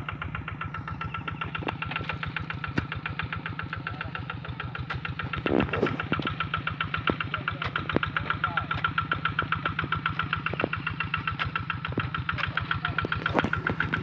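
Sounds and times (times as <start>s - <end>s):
tractor engine running: 0.0s - 14.0s.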